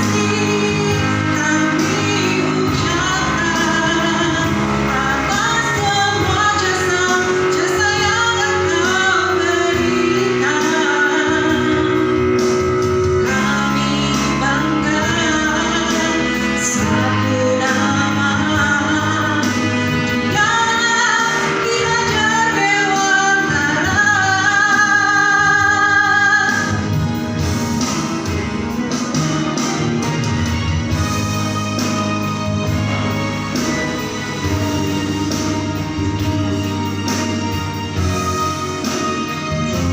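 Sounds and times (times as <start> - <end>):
person singing with instruments: 0.0 - 39.9.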